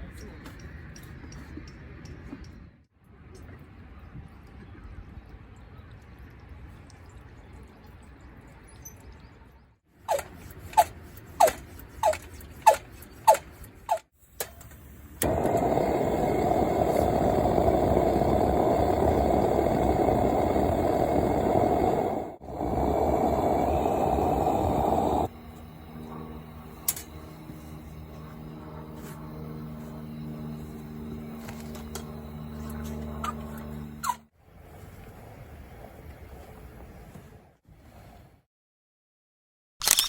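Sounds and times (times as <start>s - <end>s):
camp stove flame hissing: 15.2s - 28.1s.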